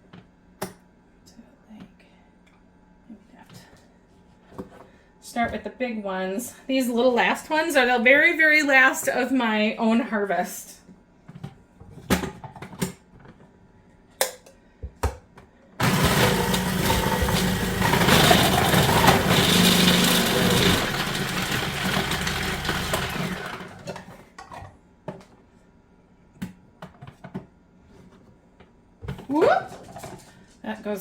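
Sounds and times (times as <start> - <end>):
food processor shredding carrots: 15.8 - 24.2.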